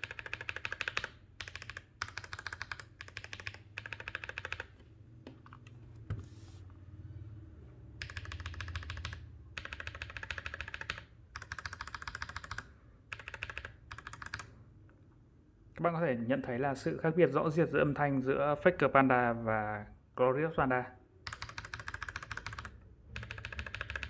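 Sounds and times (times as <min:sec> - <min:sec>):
fast typing on mechanical keyboard: 0:00.0 - 0:04.8, 0:08.0 - 0:14.5, 0:21.3 - 0:24.0.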